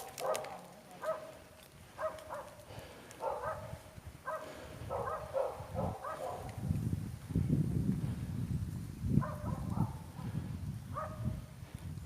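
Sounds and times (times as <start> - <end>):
dog barking: 0.0 - 1.4, 2.0 - 2.6, 3.2 - 6.6, 9.2 - 10.2, 10.9 - 11.4.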